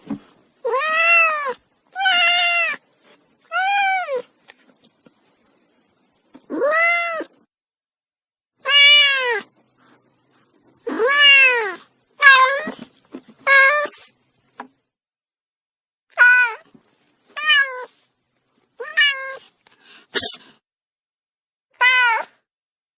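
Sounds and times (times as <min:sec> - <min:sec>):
kitten meowing: 0:00.6 - 0:02.8, 0:08.6 - 0:09.5, 0:10.9 - 0:12.8, 0:16.1 - 0:16.6.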